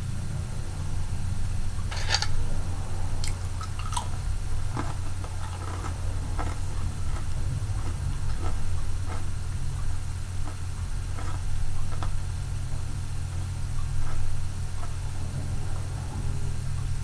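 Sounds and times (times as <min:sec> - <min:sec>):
steady low hum: 0:00.0 - 0:17.0
person chewing: 0:01.9 - 0:02.4, 0:03.1 - 0:09.2
wet mouth clicks: 0:03.2 - 0:05.7.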